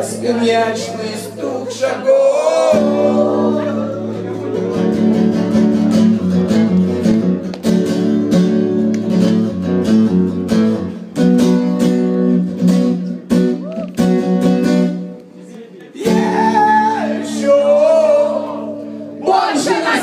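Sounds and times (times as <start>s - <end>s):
guitar strumming chords: 2.5s - 15.4s.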